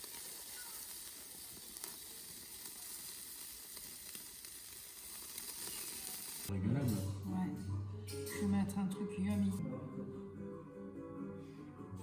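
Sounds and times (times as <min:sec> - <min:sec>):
food sizzling in a pan: 0:00.0 - 0:06.5.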